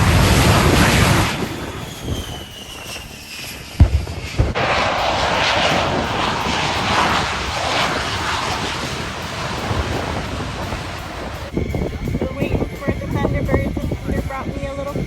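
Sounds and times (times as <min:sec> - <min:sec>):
airplane flying past: 0:00.0 - 0:15.0.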